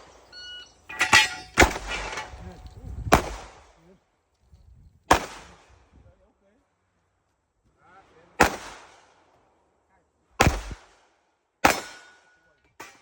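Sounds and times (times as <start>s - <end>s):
steel targets ringing: 0.0s - 2.7s.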